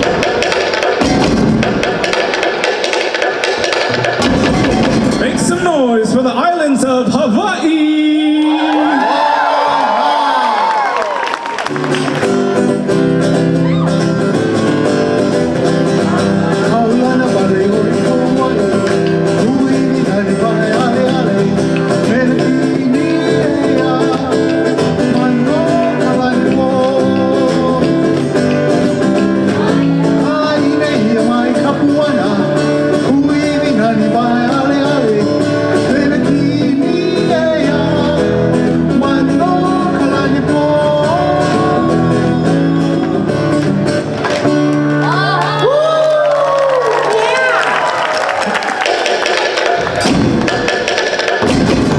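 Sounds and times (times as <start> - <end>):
person singing: 15.6 - 43.6.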